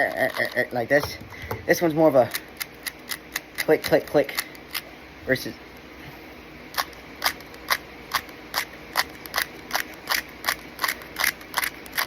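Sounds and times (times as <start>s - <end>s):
puzzle cube clicking: 6.8s - 12.0s.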